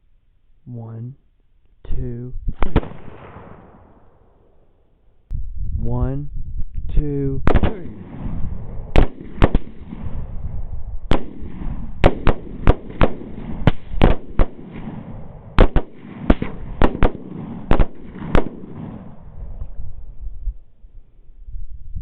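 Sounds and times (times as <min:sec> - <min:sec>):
rapid rifle fire: 0:02.6 - 0:04.1, 0:07.5 - 0:10.3, 0:11.1 - 0:19.3.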